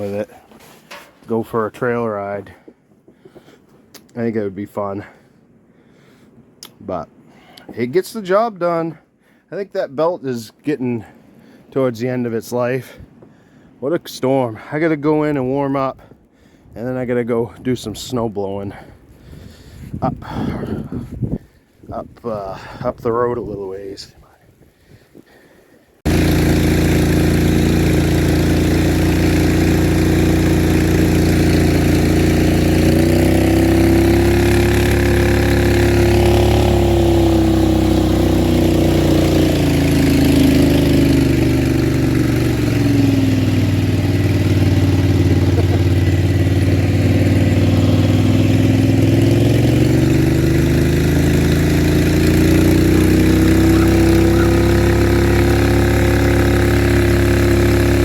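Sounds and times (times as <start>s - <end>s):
small engine running: 26.1s - 58.0s.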